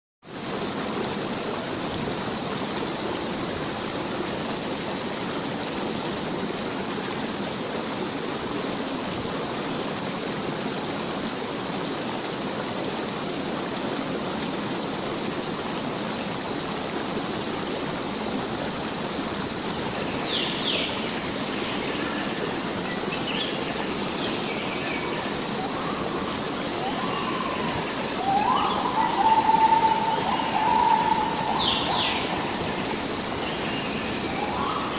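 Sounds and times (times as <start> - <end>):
stream water flowing: 0.2 - 34.9
short chirping calls: 20.1 - 34.9.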